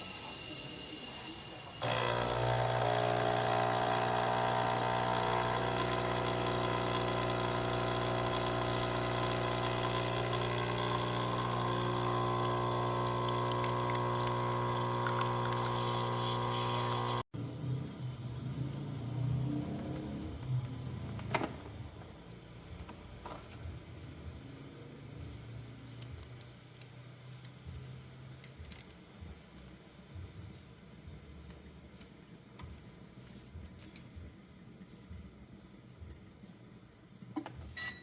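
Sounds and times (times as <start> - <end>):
espresso machine pump buzzing: 0.0 - 17.3.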